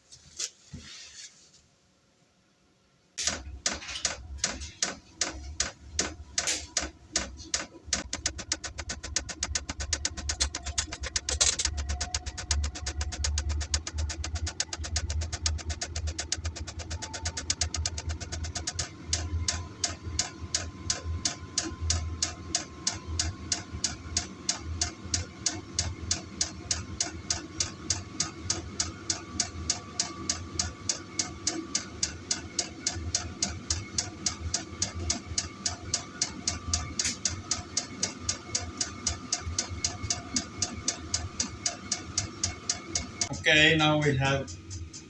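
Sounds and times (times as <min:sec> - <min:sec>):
low burner hum: 0:03.2 - 0:24.2
fuel pump ticking: 0:03.2 - 0:45.0.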